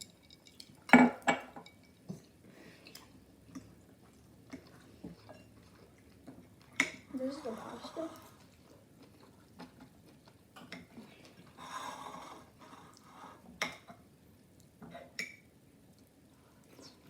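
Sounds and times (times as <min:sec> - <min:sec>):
cutlery clinking on a plate: 0:00.0 - 0:02.1.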